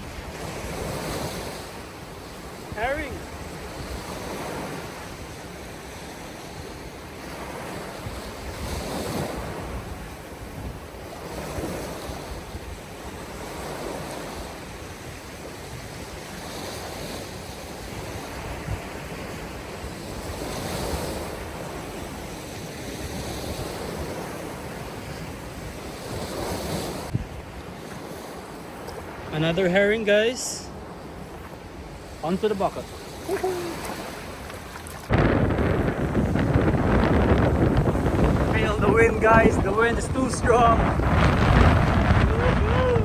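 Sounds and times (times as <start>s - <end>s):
wind buffeting the microphone: 0.0s - 29.4s, 30.1s - 43.0s
surf breaking on a beach: 0.0s - 43.0s.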